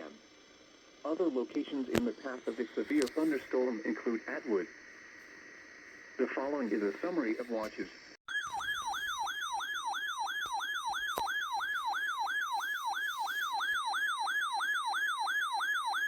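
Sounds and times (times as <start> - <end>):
electronic siren yelping: 8.3 - 16.0.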